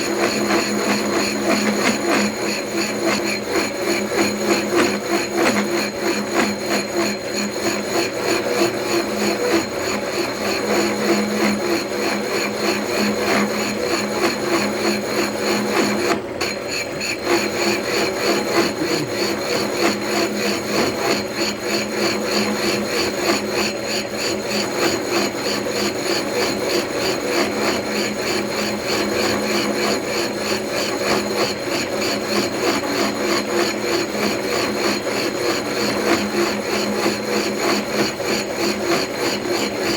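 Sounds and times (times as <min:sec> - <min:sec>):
milling machine hum: 0:00.0 - 0:39.9
cutter rattling on metal: 0:15.5 - 0:21.6.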